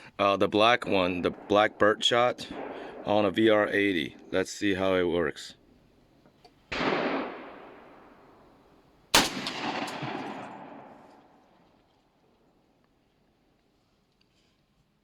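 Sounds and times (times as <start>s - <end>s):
shotgun shots with echo: 1.3s - 3.3s, 6.7s - 7.9s, 9.1s - 11.4s.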